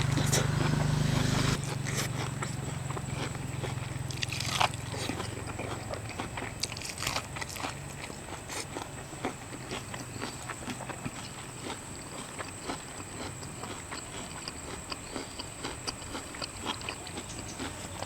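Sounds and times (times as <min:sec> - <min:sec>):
low steady hum: 0:00.0 - 0:04.9
person chewing crunchy food: 0:00.0 - 0:18.0.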